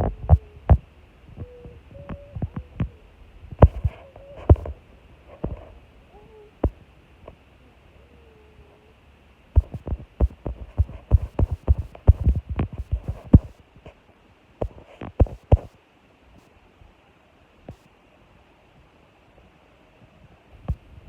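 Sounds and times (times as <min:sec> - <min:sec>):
dull low thumps and knocks: 0:03.5 - 0:04.8, 0:09.6 - 0:13.5.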